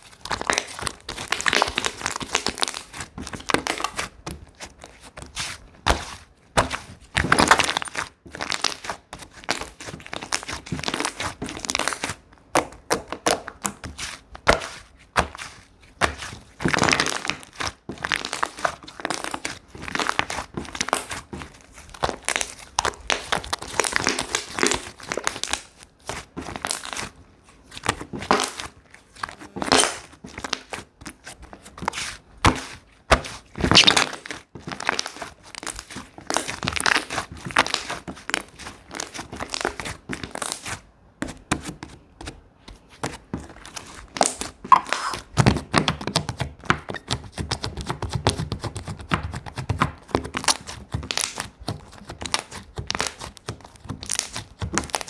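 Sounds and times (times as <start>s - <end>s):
slime squished crackling: 33.7s - 39.7s.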